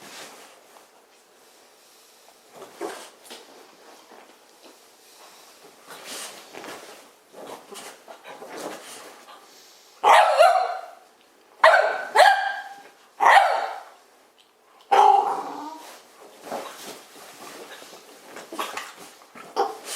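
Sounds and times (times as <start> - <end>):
faint rustling: 0.0 - 10.0, 15.5 - 19.9
dog barking: 10.0 - 11.0, 11.6 - 14.0, 14.9 - 15.4.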